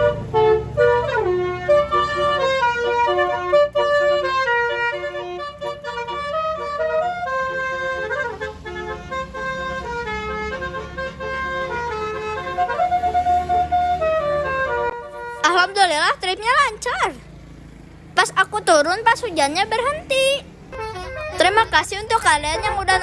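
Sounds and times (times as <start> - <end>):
tuned air horns playing melody: 0.0 - 15.8, 20.7 - 23.0
vehicle rumble: 0.0 - 23.0.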